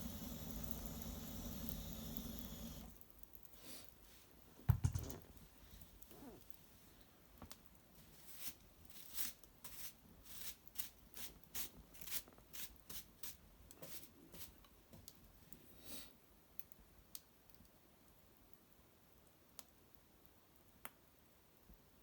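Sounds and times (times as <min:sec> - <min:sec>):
fire popping: 0:00.0 - 0:03.3
brushwood fire crackling: 0:00.0 - 0:04.1.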